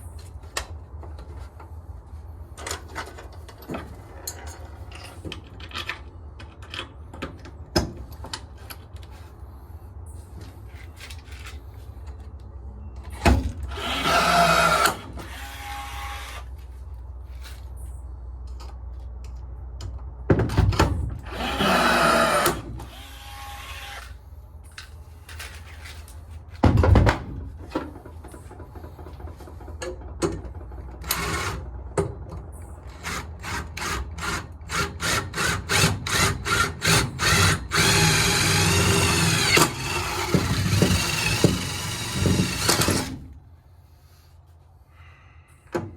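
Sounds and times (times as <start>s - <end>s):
handheld power tool running: 13.7s - 16.4s, 21.3s - 24.1s, 34.7s - 43.2s.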